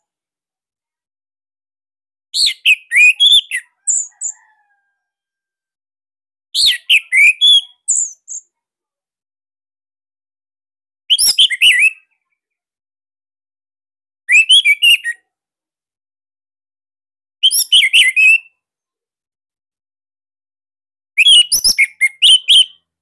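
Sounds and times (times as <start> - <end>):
thrush singing whistled notes: 14.3 - 15.1, 21.2 - 22.8.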